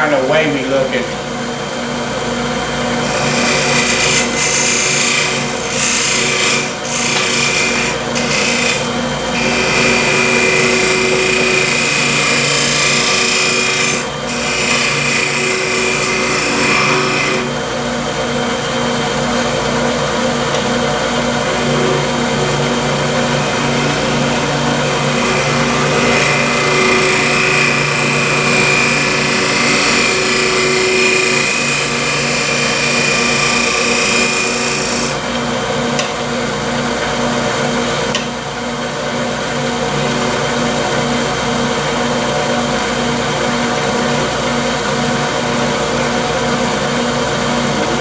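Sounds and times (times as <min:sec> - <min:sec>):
lathe motor hum: 0:00.0 - 0:48.0
tool cutting wood scraping hiss: 0:03.0 - 0:17.5, 0:21.6 - 0:35.2.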